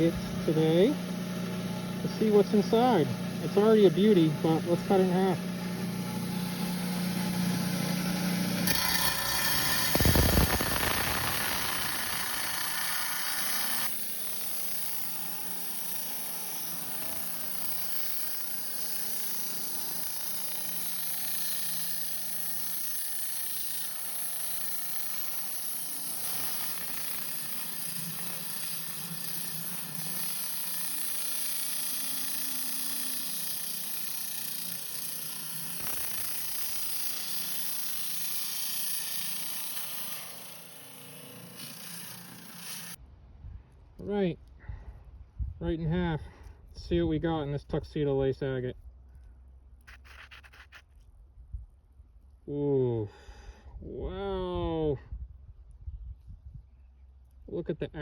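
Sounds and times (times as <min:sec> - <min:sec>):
rock saw grinding through stone: 0:00.0 - 0:43.0, 0:49.9 - 0:50.8.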